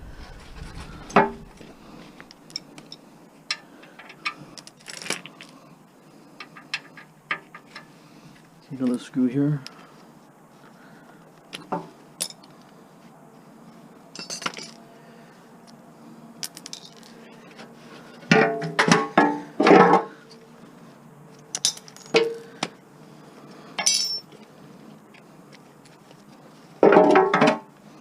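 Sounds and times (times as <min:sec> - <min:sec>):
metal parts clinking and clanking: 0:01.1 - 0:05.5, 0:12.2 - 0:12.5, 0:14.1 - 0:14.8, 0:16.4 - 0:17.2, 0:21.4 - 0:22.4, 0:23.8 - 0:24.4.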